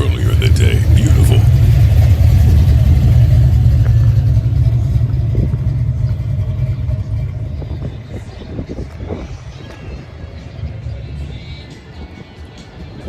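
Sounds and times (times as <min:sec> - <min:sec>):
car engine rumbling: 0:00.0 - 0:13.0.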